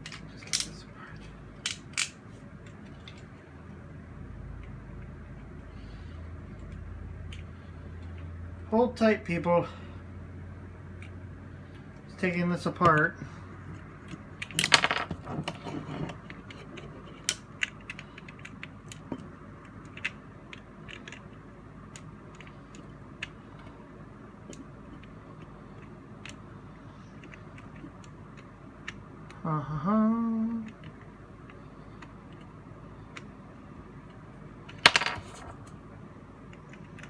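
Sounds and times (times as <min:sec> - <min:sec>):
plastic toy joint clicks: 0:00.0 - 0:00.8, 0:01.6 - 0:03.3
man humming: 0:29.4 - 0:30.7.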